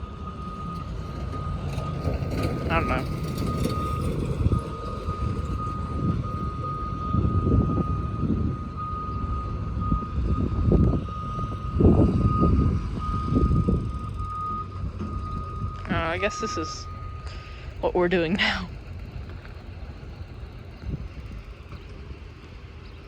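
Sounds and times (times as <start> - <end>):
back-up alarm tone: 0.0 - 18.8
heavy machinery diesel engines: 0.0 - 23.0.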